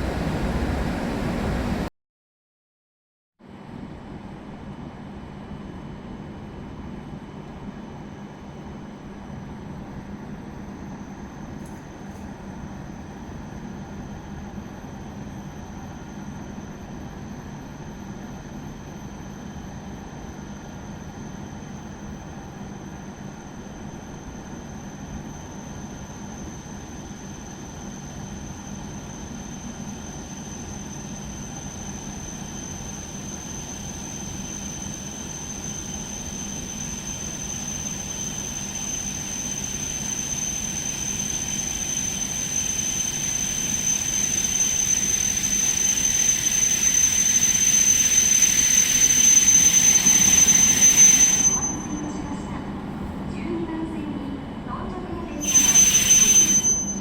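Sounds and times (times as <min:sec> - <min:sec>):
train running noise: 0:06.0 - 0:57.0
high-pitched whine: 0:12.1 - 0:52.5, 0:55.4 - 0:57.0.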